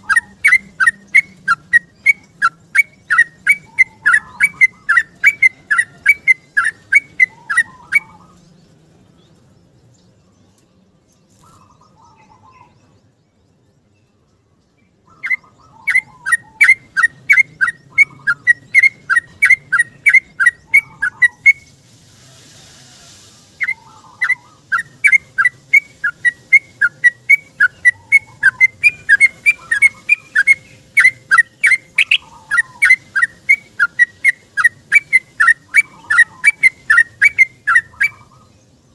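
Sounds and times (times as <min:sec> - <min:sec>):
bird whistling song: 0:00.0 - 0:08.5, 0:14.6 - 0:21.8, 0:23.6 - 0:38.9.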